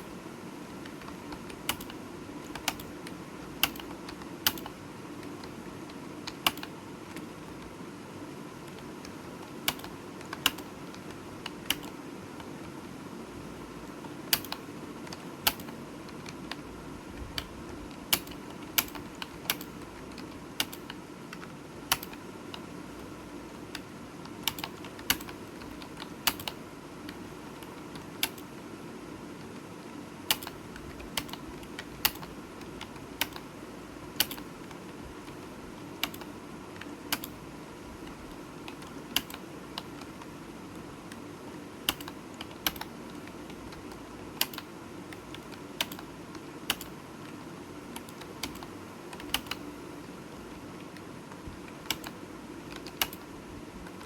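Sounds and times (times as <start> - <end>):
keyboard key clicks: 0.8 - 3.0, 3.6 - 7.3, 8.7 - 12.5, 14.0 - 16.6, 17.4 - 23.1, 23.7 - 28.5, 30.3 - 33.5, 34.2 - 37.4, 38.0 - 40.3, 41.9 - 46.1, 46.7 - 47.4, 48.0 - 49.7, 50.8 - 53.3.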